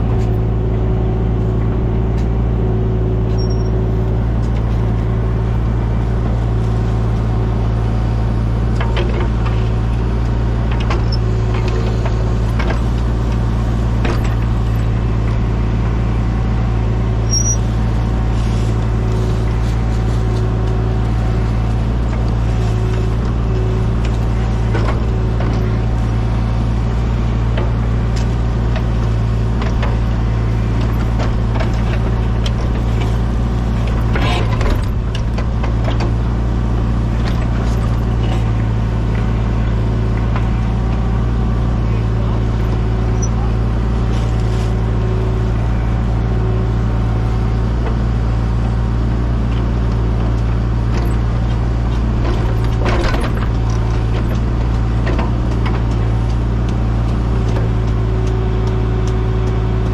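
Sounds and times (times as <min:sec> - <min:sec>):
diesel engine running steadily: 0:00.0 - 0:59.9
machine knocks and clanks: 0:08.7 - 0:16.0, 0:19.0 - 0:41.0, 0:49.5 - 0:59.9.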